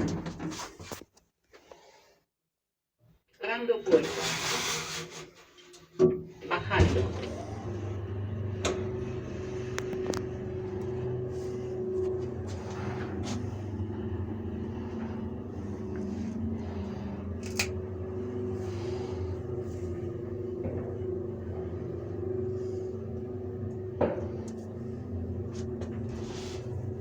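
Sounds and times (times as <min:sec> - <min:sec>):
lift machine hum: 0:06.4 - 0:27.0.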